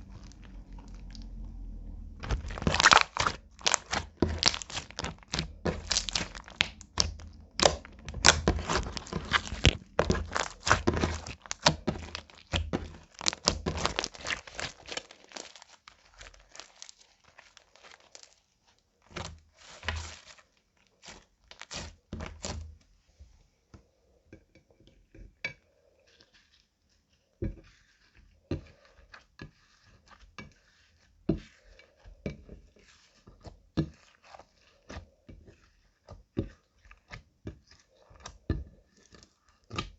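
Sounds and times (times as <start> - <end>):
slime crackling and popping: 0.0 - 22.7.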